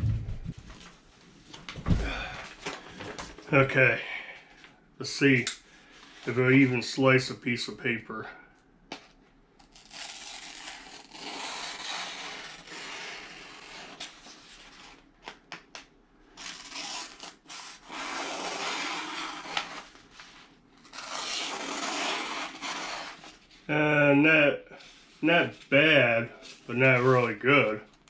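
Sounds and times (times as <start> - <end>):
knife slicing paper: 20.8 - 23.4.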